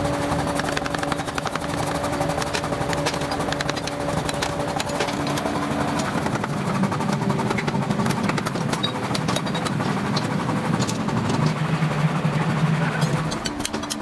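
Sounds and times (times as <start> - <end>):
machine humming: 0.0 - 14.0
small irregular clicks and ticks: 0.5 - 11.6.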